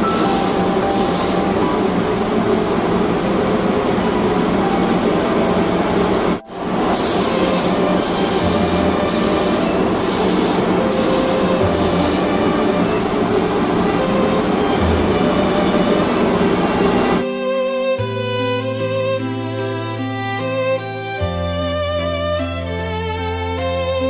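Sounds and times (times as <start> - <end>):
paint spray gun hissing: 0.0 - 17.2.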